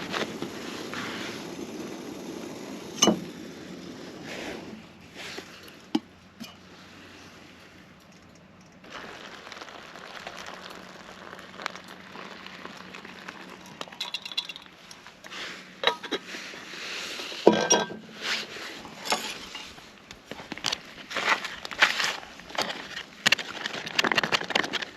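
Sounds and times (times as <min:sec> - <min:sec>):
metal cookware clinking: 0:17.5 - 0:18.0.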